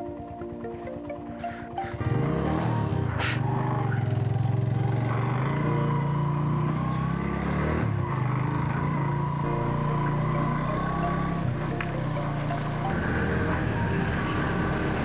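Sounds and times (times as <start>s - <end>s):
motorcycle engine accelerating: 0.0s - 15.0s.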